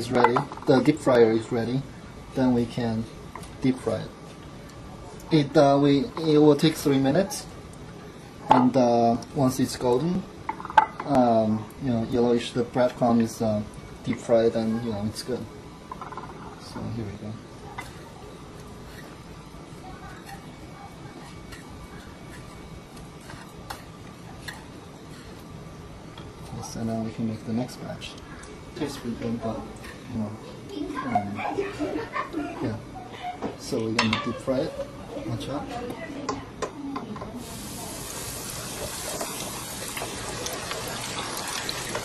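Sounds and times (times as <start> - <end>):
oil sizzling in deep fryer: 37.4 - 42.0
oil popping: 37.6 - 42.0.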